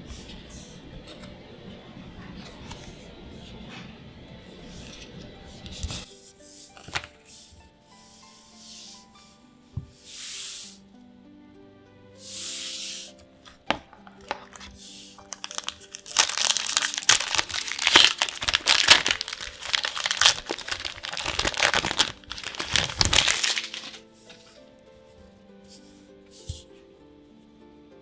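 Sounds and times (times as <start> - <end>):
foil wrapper crinkling: 14.0 - 24.1.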